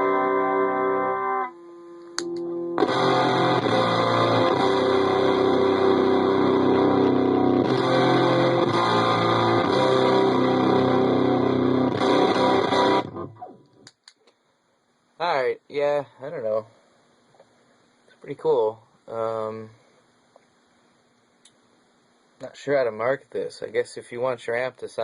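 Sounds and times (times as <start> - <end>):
distorted electric guitar chords: 0.0 - 13.8.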